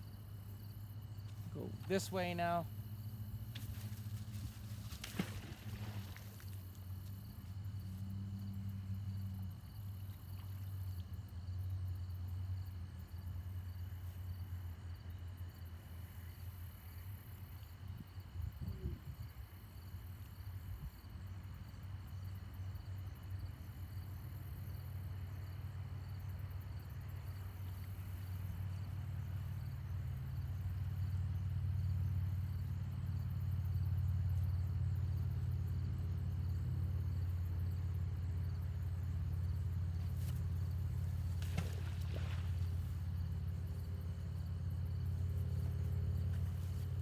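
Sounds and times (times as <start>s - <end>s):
vehicle engine rumble: 0.0s - 47.0s.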